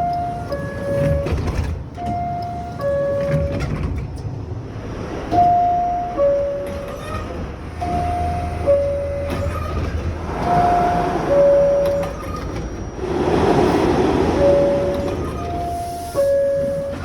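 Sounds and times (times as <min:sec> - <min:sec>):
two-tone door chime: 0:00.0 - 0:04.0, 0:07.8 - 0:17.0
train rumble: 0:00.0 - 0:17.0.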